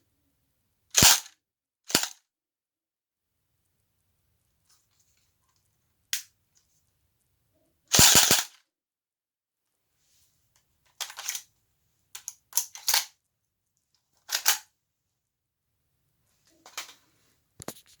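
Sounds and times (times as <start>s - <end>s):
pistol clicks and clacks: 7.9s - 8.6s.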